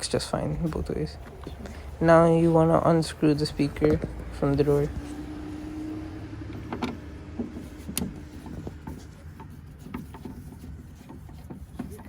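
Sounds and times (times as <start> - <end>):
light clicks and taps: 6.5 - 12.0.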